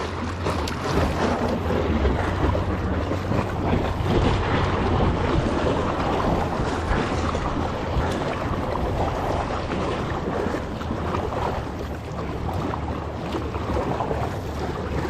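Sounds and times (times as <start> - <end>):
low continuous rumble: 0.0 - 15.0
water sloshing around kayak: 0.0 - 15.0
wind buffeting microphone: 0.0 - 15.0.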